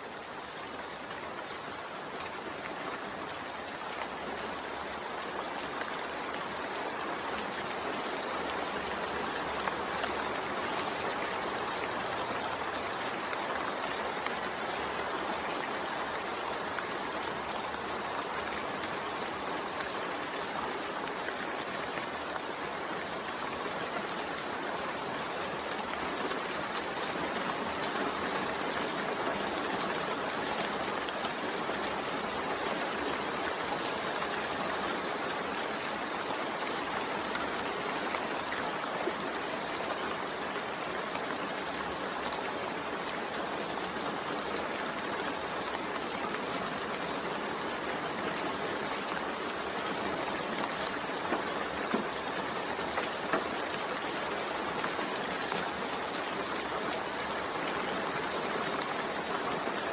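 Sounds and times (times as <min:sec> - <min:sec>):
sharper raindrops: 0:00.0 - 0:59.9
steady rain hiss: 0:00.0 - 0:59.9.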